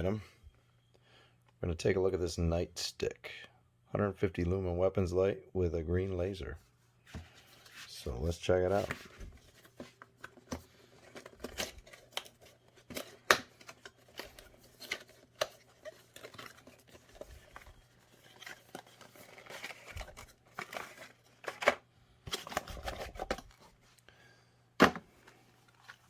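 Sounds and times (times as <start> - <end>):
plastic and cardboard crinkling: 7.2 - 23.9, 24.8 - 26.0.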